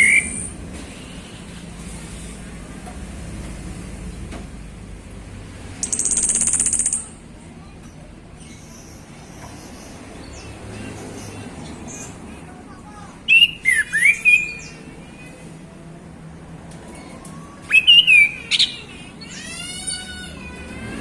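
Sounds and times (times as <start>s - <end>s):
thrush singing whistled notes: 13.3s - 14.8s, 17.7s - 18.9s.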